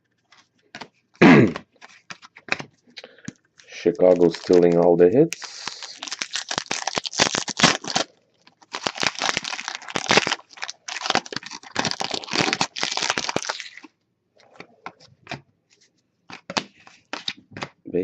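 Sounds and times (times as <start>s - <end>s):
card pack wrapper crinkling and tearing: 3.7s - 13.9s, 16.3s - 17.4s.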